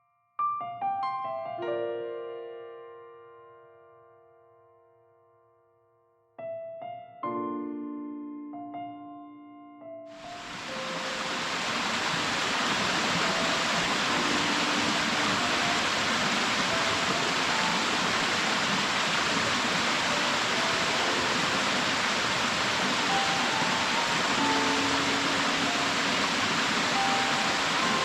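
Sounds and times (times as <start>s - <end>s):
faint piano notes: 6.4s - 28.0s
waterfall rushing: 10.2s - 28.0s.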